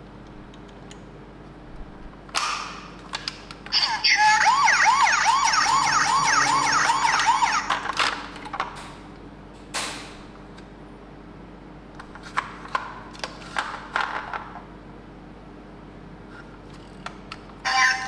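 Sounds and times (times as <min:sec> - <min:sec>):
toy siren wailing: 0:03.8 - 0:07.9, 0:17.7 - 0:18.0.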